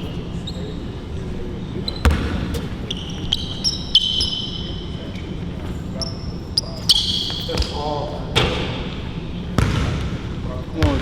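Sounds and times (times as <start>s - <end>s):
sneaker squeaks: 0.0s - 9.8s
basketball bouncing on court: 1.9s - 3.6s, 7.2s - 9.0s, 9.6s - 11.0s.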